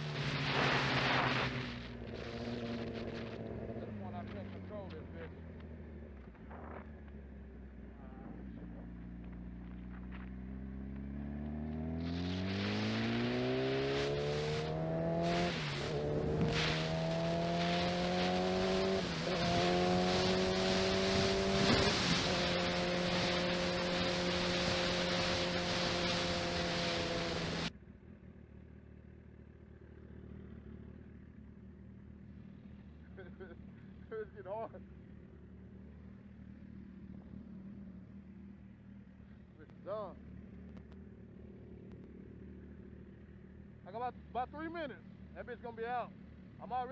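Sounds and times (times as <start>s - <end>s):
vehicle engine speeding up: 0.0s - 7.2s, 8.0s - 27.7s.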